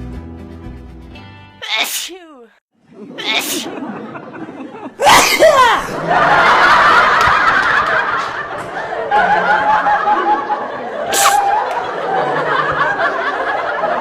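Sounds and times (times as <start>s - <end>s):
laughter and giggling: 2.9s - 14.0s.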